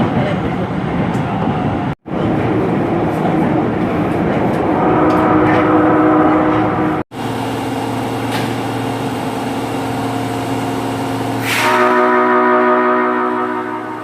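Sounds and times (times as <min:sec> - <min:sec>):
train noise: 0:00.0 - 0:14.0
train horn chord: 0:04.7 - 0:07.0, 0:11.4 - 0:14.0.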